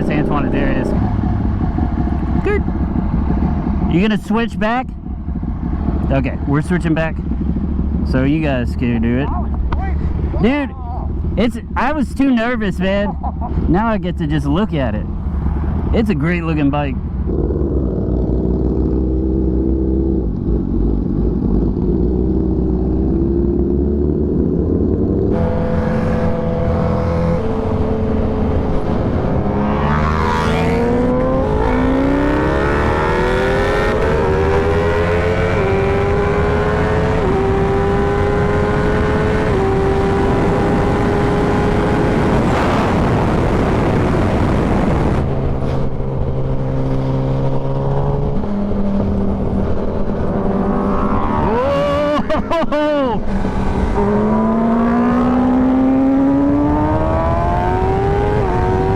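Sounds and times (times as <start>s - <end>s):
second engine passing by: 15.1s - 58.9s
motorcycle engine with gear changes: 16.6s - 42.9s.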